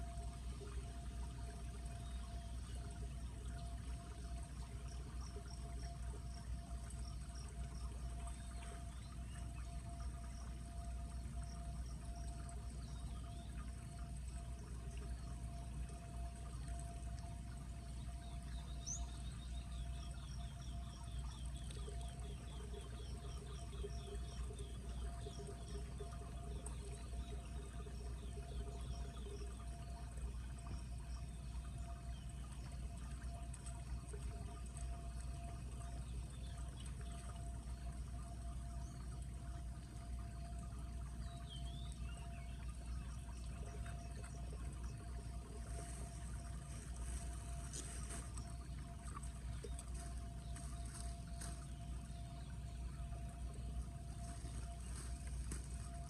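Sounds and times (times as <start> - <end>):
floodwater pouring into drain: 42.6 - 56.0.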